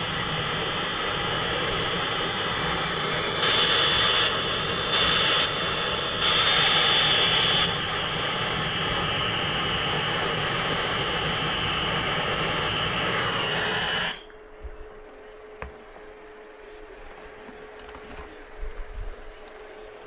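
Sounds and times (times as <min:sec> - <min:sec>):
torch flame hissing: 0:00.0 - 0:14.2.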